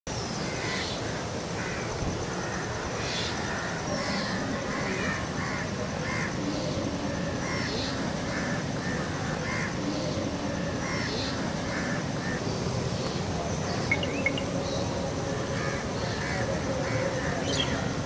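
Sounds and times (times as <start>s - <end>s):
steady background noise: 0.1s - 18.0s
harsh caw-like bird calls: 0.4s - 6.4s, 7.4s - 9.9s, 10.8s - 13.1s, 15.5s - 18.0s
high bird chirps: 13.8s - 14.9s.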